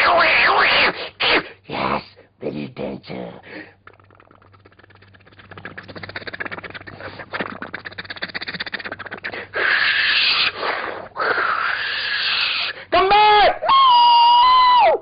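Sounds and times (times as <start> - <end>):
person screeching like a dinosaur: 9.6 - 10.6, 11.2 - 15.0.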